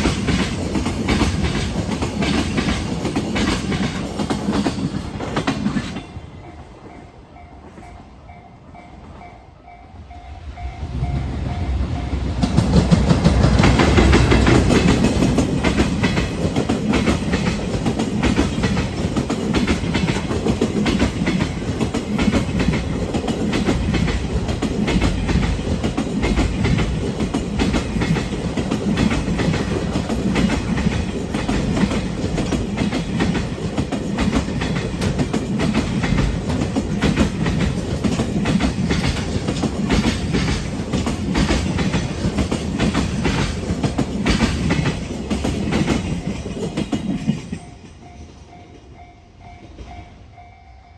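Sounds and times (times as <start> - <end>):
train wheels clacking on rails: 0.0 - 50.7.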